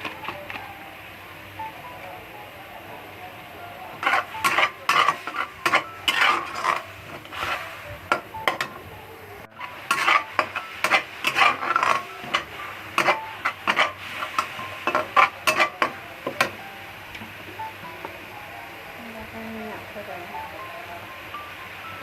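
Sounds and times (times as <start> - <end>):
spatula scraping a wok: 3.9 - 8.8, 9.5 - 16.6.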